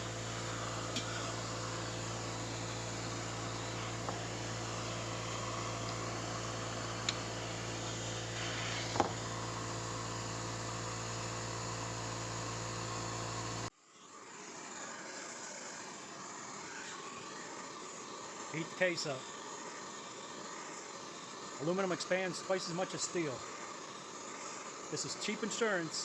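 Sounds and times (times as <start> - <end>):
machine hum with fan noise: 0.0 - 13.7.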